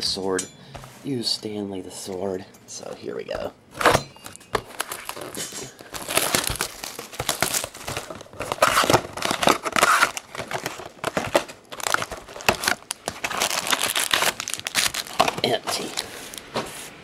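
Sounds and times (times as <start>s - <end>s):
plastic and foil packaging crinkling: 3.8s - 16.5s.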